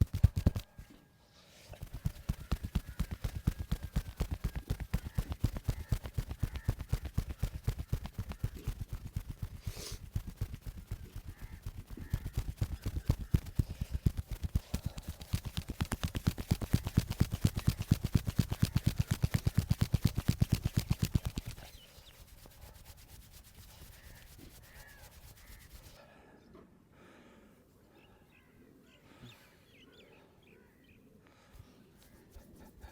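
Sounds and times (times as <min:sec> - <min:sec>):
hands slapping on back: 0:00.0 - 0:00.8, 0:01.8 - 0:21.7.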